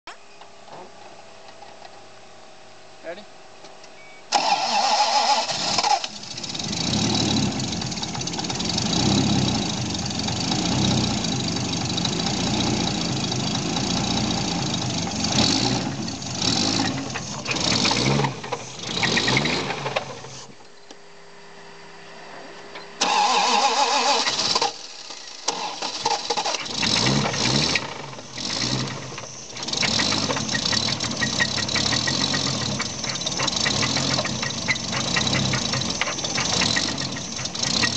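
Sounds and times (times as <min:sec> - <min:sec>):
engine cranking and starting: 0:04.3 - 0:20.7, 0:23.0 - 0:37.9
engine revving with rod knock: 0:13.8 - 0:20.3, 0:26.6 - 0:37.9.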